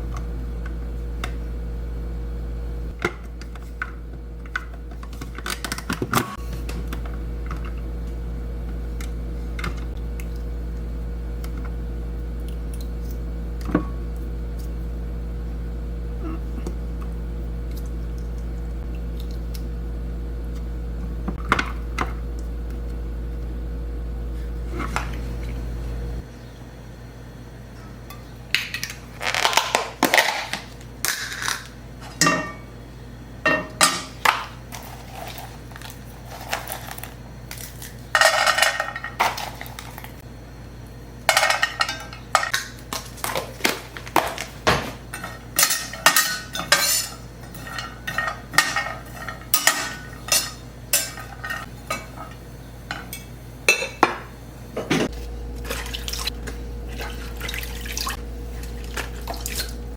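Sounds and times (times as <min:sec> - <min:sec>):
steady low hum: 0:00.0 - 0:59.9
dishes and cutlery clattering: 0:44.8 - 0:52.3.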